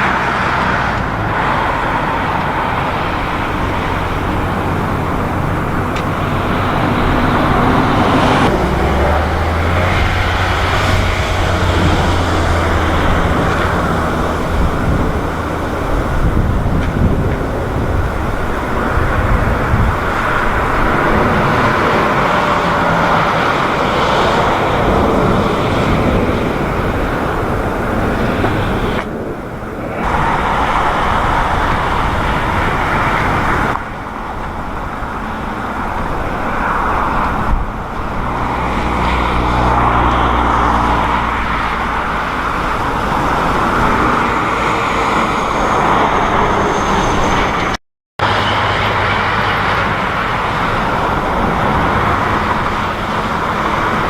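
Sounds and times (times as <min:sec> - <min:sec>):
jet engines running: 0:00.0 - 0:54.0
wind rumbling on microphone: 0:00.0 - 0:54.0.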